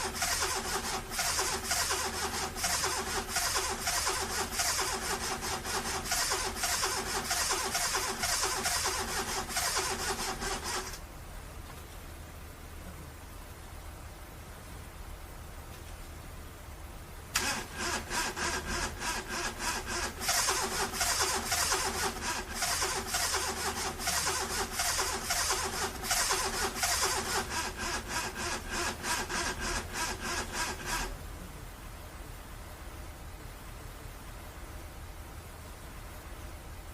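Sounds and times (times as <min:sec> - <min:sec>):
starter motor cranking engine: 0:00.0 - 0:11.0, 0:17.4 - 0:31.2.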